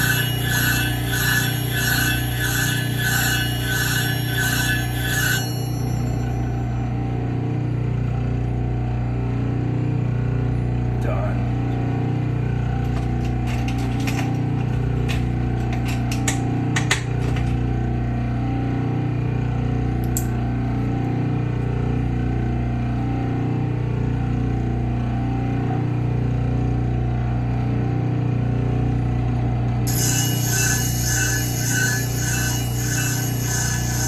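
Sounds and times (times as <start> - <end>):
sharpening machine humming: 0.0 - 7.4, 11.4 - 23.6, 29.9 - 34.0
sharp metallic clicks and taps: 12.9 - 17.6.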